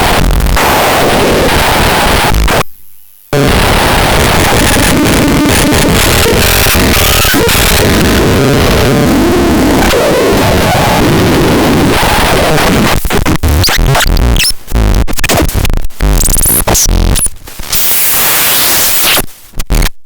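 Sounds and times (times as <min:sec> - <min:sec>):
harsh synthesizer noise: 0:03.4 - 0:19.2.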